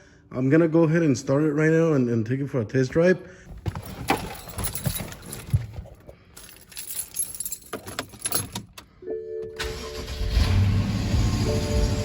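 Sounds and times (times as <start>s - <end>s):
keys jangling: 3.5s - 8.9s
car engine starting and running: 9.6s - 12.0s.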